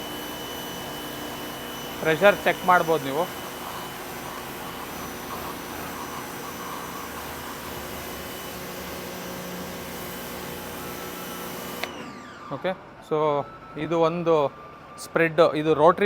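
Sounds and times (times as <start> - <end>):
pressure washer motor hum: 0.0 - 12.8.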